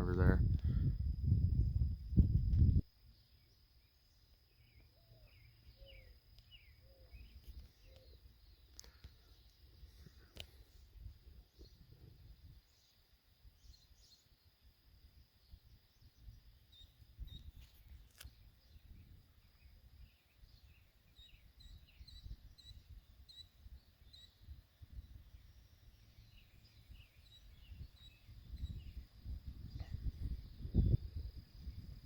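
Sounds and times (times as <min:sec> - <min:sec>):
wind rumble on microphone: 0:00.0 - 0:02.9, 0:09.8 - 0:12.8, 0:15.4 - 0:32.0
high insect drone: 0:00.0 - 0:32.0
small birds chirping: 0:03.0 - 0:14.8, 0:15.4 - 0:32.0.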